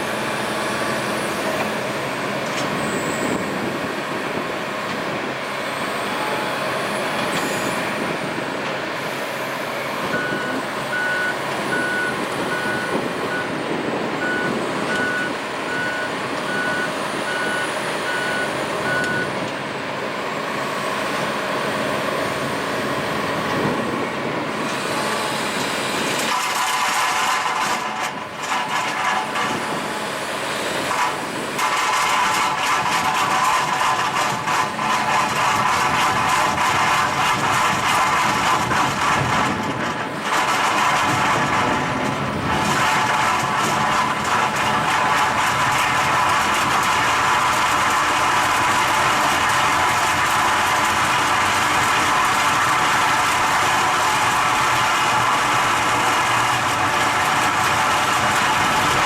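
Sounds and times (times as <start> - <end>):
excavator engine running: 0.0 - 59.0
reversing alarm beeping: 10.1 - 13.6, 14.2 - 19.4
harsh rattling clatter: 26.0 - 29.9, 30.8 - 59.0.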